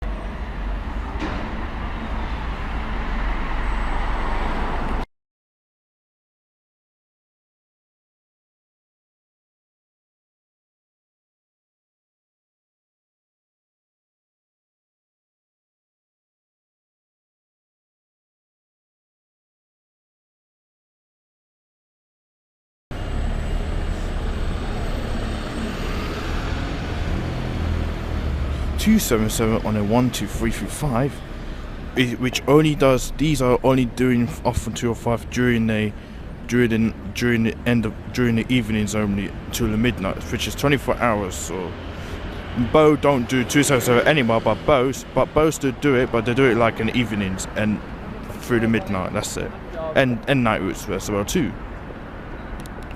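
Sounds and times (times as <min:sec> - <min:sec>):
bus engine drone: 0:00.0 - 0:05.1, 0:22.9 - 0:52.9
road traffic rumble: 0:00.0 - 0:05.1, 0:22.9 - 0:52.9
street noise: 0:00.0 - 0:05.1, 0:22.9 - 0:52.9.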